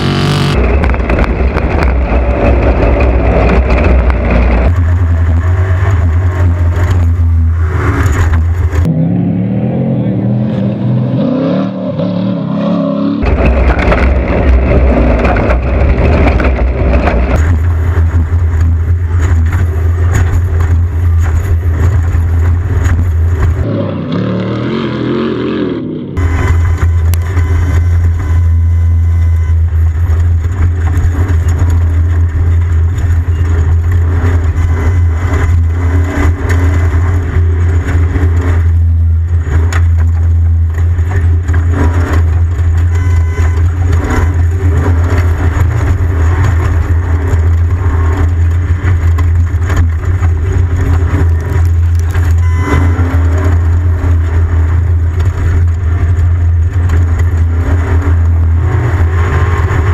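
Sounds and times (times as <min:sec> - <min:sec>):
race vehicle engine rumble: 0:00.0 - 0:59.9.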